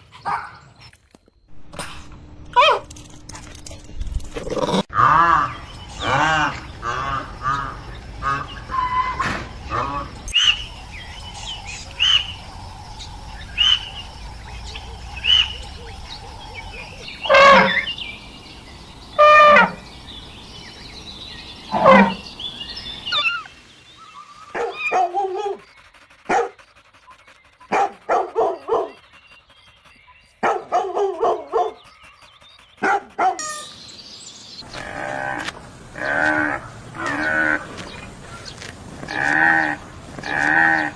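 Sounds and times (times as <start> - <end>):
dog barking: 0.2 - 0.6, 24.5 - 25.6, 26.3 - 26.6, 27.6 - 29.0, 30.4 - 31.8, 32.8 - 33.6.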